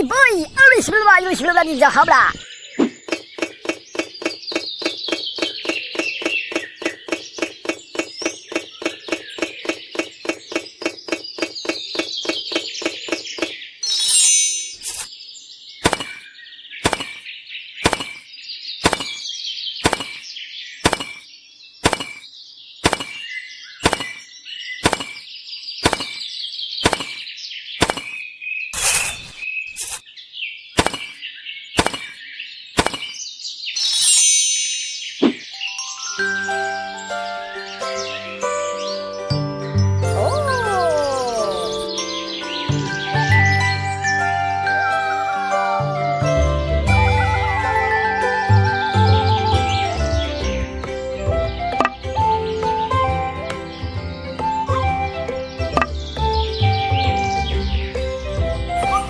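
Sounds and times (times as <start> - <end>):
birds chirping: 0.0 - 34.0, 35.0 - 45.5, 47.0 - 59.0
sharp clicks: 3.0 - 13.6, 15.8 - 16.2, 16.8 - 18.2, 18.8 - 19.2, 19.8 - 21.2, 21.8 - 22.2, 22.8 - 28.2, 30.8 - 31.2, 31.8 - 32.2, 32.8 - 33.2.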